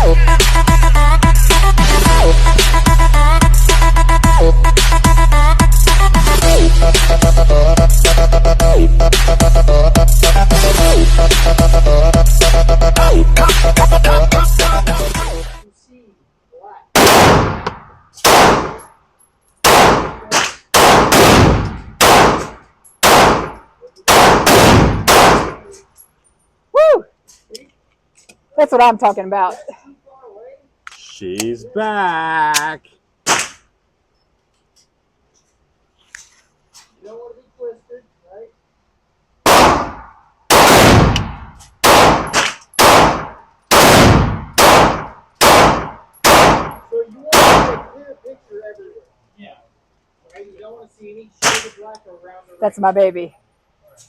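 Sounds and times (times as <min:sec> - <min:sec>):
pistol shots with echo: 0:17.0 - 0:18.9, 0:19.6 - 0:25.7, 0:39.4 - 0:48.0.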